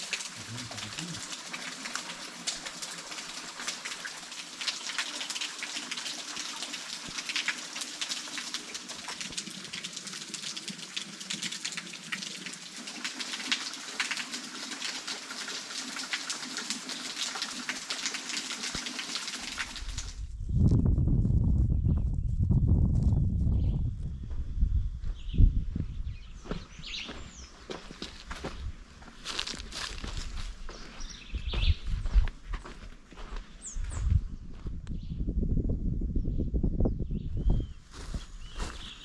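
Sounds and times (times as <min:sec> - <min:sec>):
falling water patter: 0:00.0 - 0:20.3, 0:27.0 - 0:31.2, 0:37.9 - 0:39.0
low rumble: 0:20.3 - 0:26.5.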